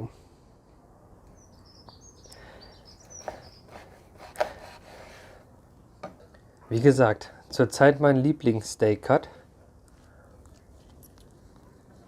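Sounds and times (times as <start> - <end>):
birds chirping softly: 1.2 - 4.1.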